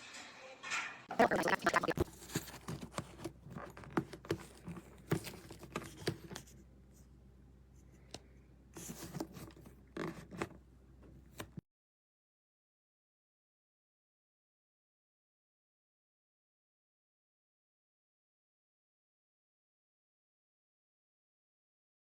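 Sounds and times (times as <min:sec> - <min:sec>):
objects being handled: 0:01.2 - 0:06.6, 0:07.8 - 0:11.6.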